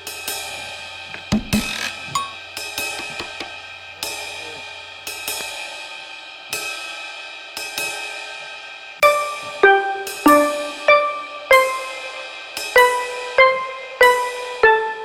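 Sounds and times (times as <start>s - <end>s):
background music: 9.0s - 15.0s
crash cymbals ringing: 9.0s - 15.0s.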